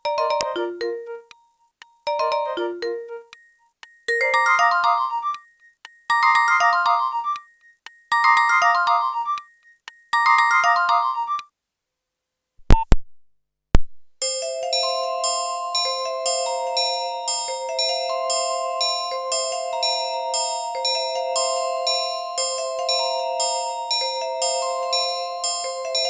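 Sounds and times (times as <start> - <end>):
chiming ringtone melody: 0.0 - 9.6, 10.2 - 11.4, 14.2 - 26.0
electronic ringtone tune: 0.1 - 1.3, 2.1 - 3.4, 4.1 - 7.5, 8.2 - 9.5, 14.2 - 26.0.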